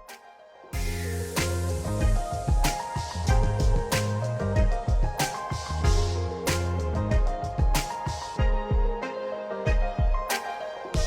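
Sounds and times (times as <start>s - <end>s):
bass line: 0.8s - 7.7s
drum hits: 0.8s - 9.0s.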